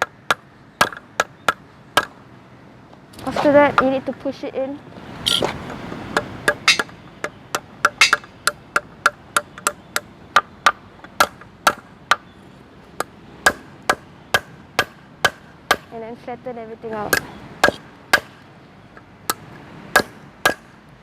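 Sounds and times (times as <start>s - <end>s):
hammer striking steel on anvil: 6.5s - 9.8s, 19.3s - 20.7s.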